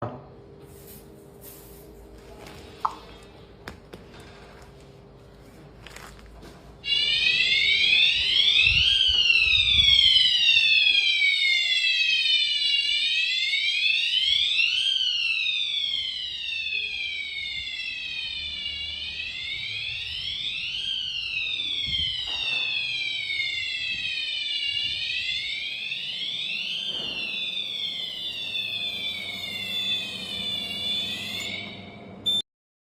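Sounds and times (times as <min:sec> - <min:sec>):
fire alarm wailing: 0:06.8 - 0:32.4.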